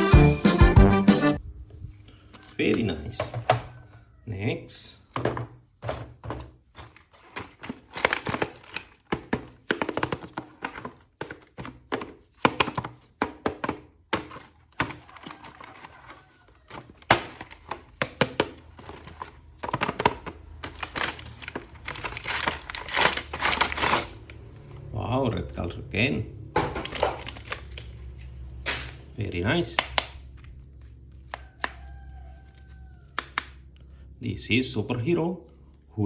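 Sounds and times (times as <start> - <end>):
packaging crinkling: 5.1 - 24.7, 26.6 - 33.6
plastic clicks and knocks: 5.2 - 15.8, 16.7 - 23.6.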